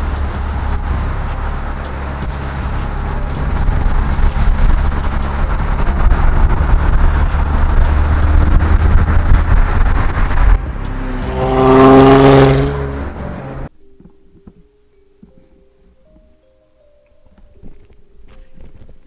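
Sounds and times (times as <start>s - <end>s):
engine and road rumble: 0.0s - 13.7s
engine revving: 0.0s - 13.7s.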